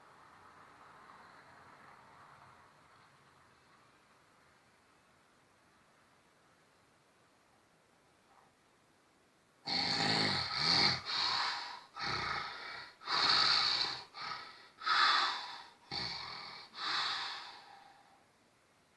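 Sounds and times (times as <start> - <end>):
man snoring loudly: 9.7 - 17.8.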